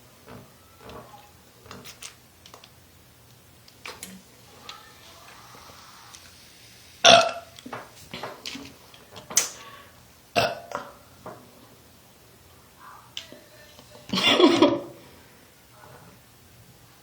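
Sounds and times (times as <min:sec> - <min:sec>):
woman burping: 0:07.0 - 0:07.5, 0:10.4 - 0:10.9, 0:14.1 - 0:15.0.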